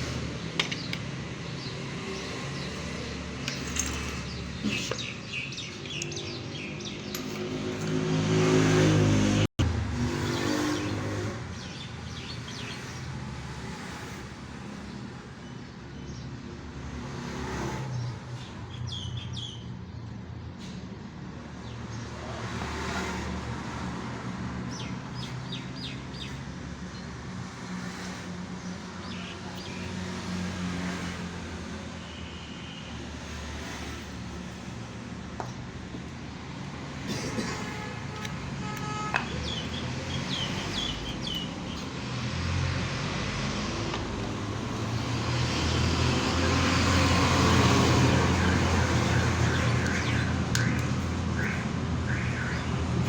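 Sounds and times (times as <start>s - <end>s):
motorcycle engine revving: 1.6s - 11.6s.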